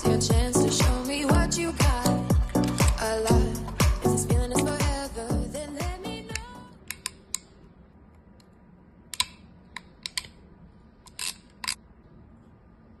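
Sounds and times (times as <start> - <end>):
background music: 0.0 - 6.8
ratchet pliers clicking: 2.5 - 3.1, 6.3 - 7.6, 11.0 - 11.8.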